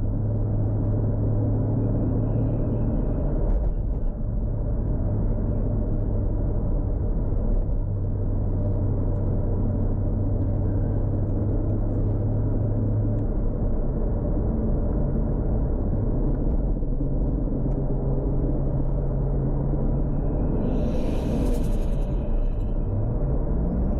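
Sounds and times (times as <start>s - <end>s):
car engine running while driving: 0.0s - 23.9s.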